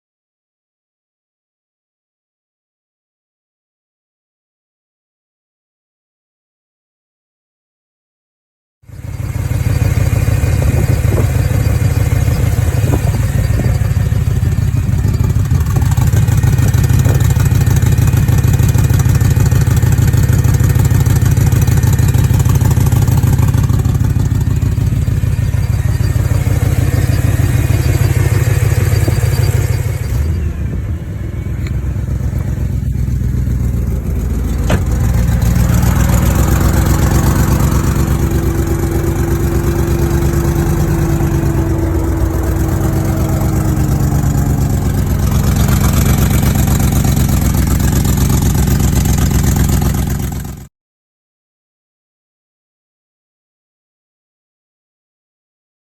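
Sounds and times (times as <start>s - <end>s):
car engine idling roughly: 9.0s - 50.6s.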